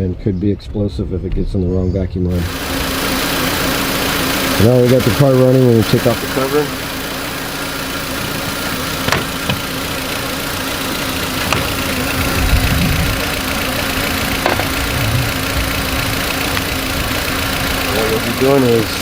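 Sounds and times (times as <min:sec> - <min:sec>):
car engine rough idle: 0:02.3 - 0:19.0
sharp clicks and knocks: 0:09.0 - 0:09.7, 0:11.4 - 0:11.9, 0:14.4 - 0:15.0, 0:16.4 - 0:16.8.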